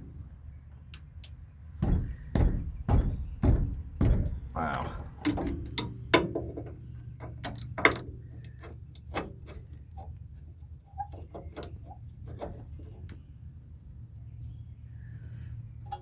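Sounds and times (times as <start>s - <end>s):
steady low hum: 0.0s - 9.0s
hand tools tapping on metal: 0.9s - 6.6s.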